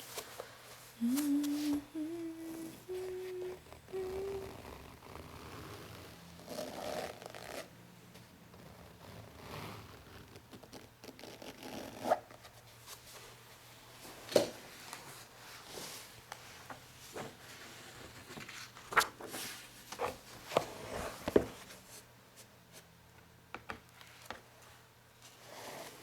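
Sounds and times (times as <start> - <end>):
person humming: 1.0 - 5.1.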